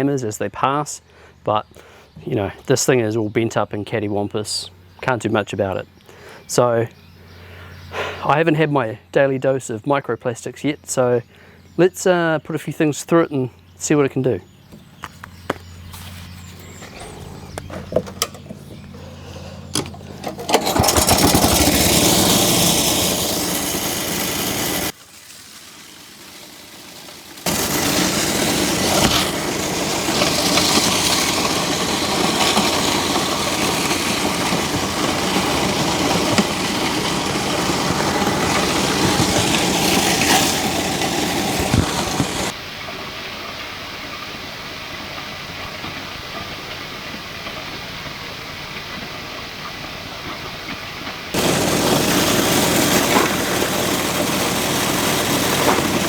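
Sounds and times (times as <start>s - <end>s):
wood chipper engine hum: 14.4s - 42.5s, 51.0s - 56.0s
wood chipper grinding: 14.6s - 42.6s, 51.0s - 56.0s.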